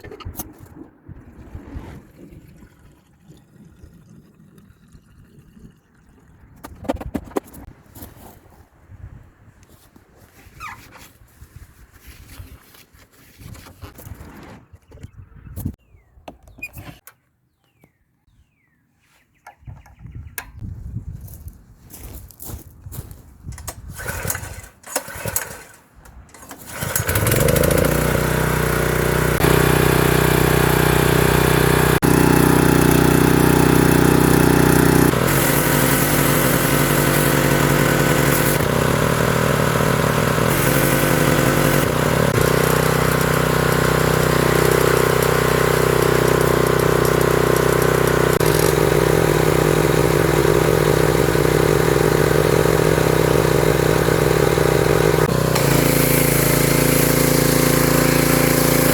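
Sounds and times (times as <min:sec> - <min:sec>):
pressure washer engine running: 0:26.7 - 0:58.9.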